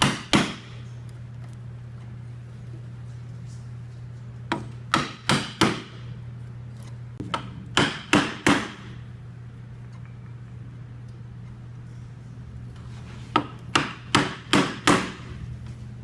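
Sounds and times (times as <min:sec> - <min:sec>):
steady low hum: 0:00.0 - 0:16.0
mallet striking chisel: 0:04.5 - 0:05.9, 0:07.2 - 0:08.8, 0:13.4 - 0:15.2.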